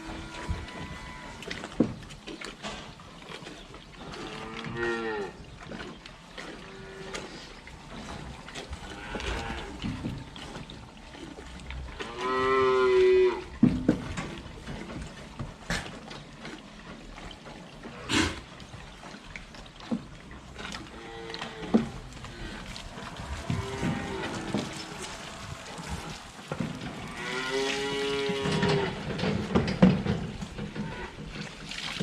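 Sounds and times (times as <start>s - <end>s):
cows mooing: 0.0s - 1.6s, 4.0s - 5.4s, 6.5s - 10.4s, 11.9s - 13.6s, 20.8s - 31.4s.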